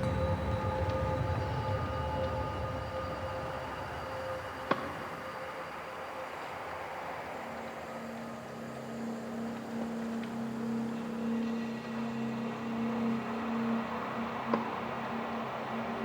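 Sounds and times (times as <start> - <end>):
low held tone: 0.0 - 5.1
sustained ambient tones: 0.0 - 16.0.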